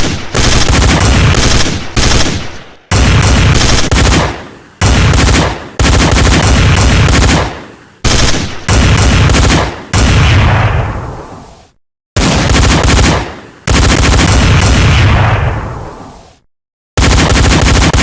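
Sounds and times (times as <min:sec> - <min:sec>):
automatic gunfire bursts: 0:00.0 - 0:10.1, 0:12.2 - 0:14.8, 0:17.0 - 0:18.0.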